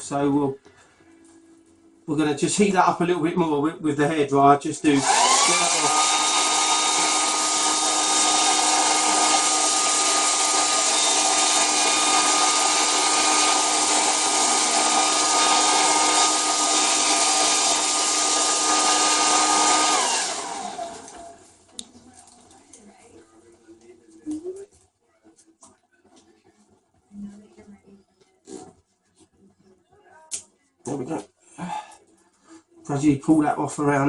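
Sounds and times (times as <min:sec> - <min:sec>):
hairdryer running: 0:04.8 - 0:21.5.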